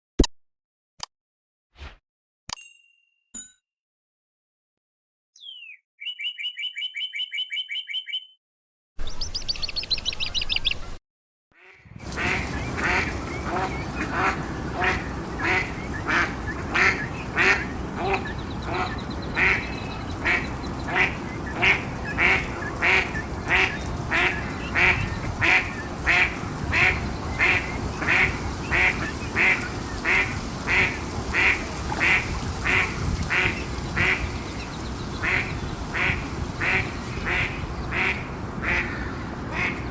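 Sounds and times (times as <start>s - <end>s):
mallard quacking: 11.6s - 34.3s, 35.2s - 39.9s
outdoor background noise: 11.9s - 39.9s.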